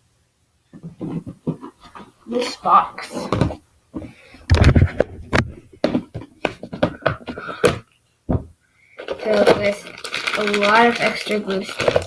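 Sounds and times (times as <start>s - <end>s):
box being handled and opened: 0.8s - 12.0s
thump: 7.7s - 8.6s.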